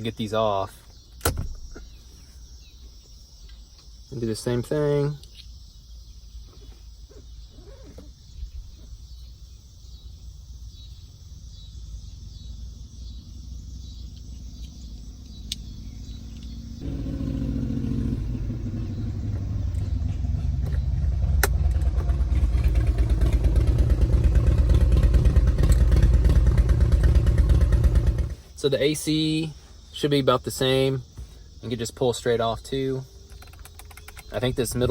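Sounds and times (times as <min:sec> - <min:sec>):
sharp clicks: 0:33.2 - 0:34.6.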